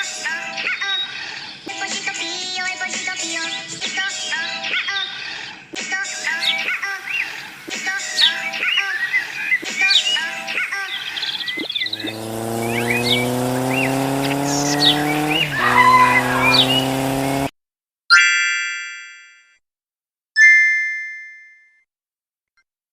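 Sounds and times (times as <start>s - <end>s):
birds chirping: 6.4s - 17.5s
engine rising in pitch: 11.6s - 17.5s
bell-like dings: 20.4s - 21.8s.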